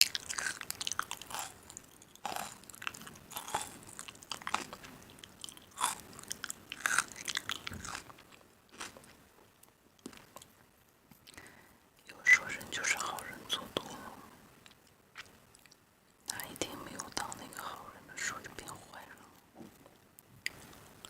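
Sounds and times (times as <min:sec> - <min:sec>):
person chewing: 0:00.0 - 0:09.1
person crunching food: 0:00.0 - 0:09.2.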